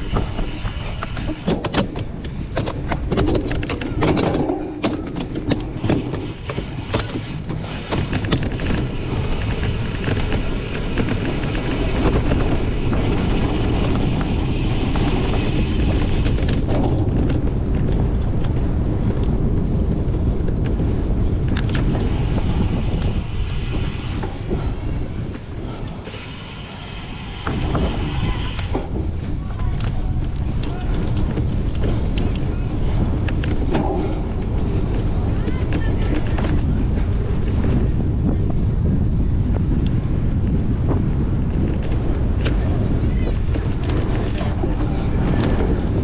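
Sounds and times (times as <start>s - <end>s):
bike chain rattling and clicking: 0.0s - 1.6s, 5.4s - 18.6s, 21.5s - 24.3s, 26.0s - 33.6s
bicycle rumbling over rough ground: 0.0s - 46.0s.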